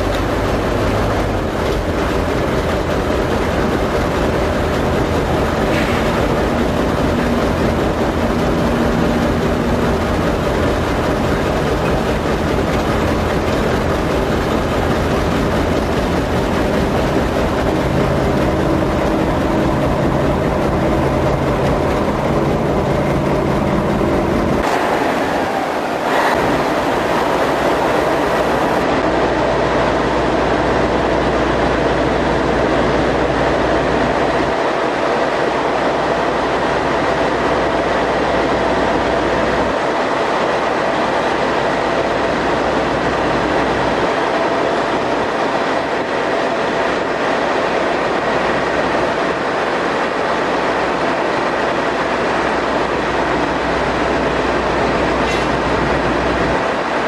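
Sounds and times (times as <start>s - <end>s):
mechanical rushing din: 0.3s - 29.2s
low hum: 3.2s - 32.6s.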